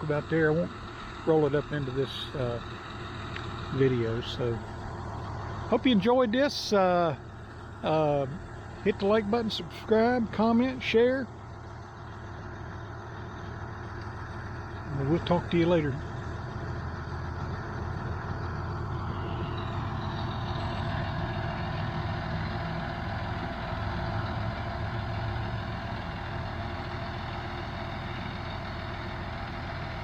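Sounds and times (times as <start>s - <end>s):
tractor diesel engine running: 0.0s - 30.0s.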